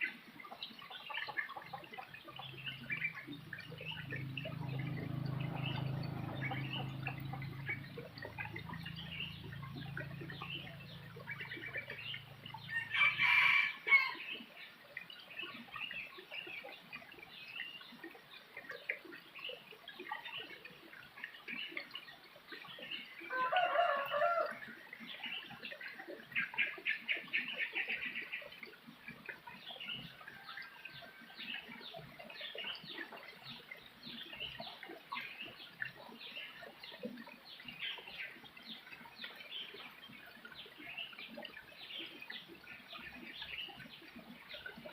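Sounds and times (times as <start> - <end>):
small birds chirping: 0.0 - 13.3, 13.9 - 44.9
rooster crowing: 12.7 - 14.2, 23.3 - 24.6.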